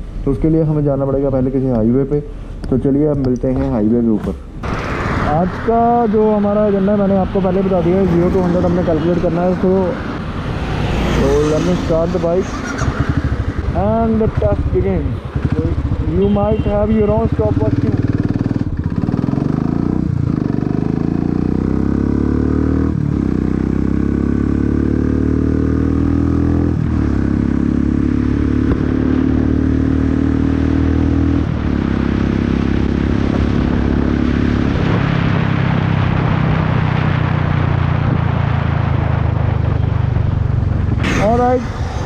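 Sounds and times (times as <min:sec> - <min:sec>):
motorcycle engine accelerating: 0:04.2 - 0:42.0
wind noise: 0:04.5 - 0:17.6, 0:31.0 - 0:42.0.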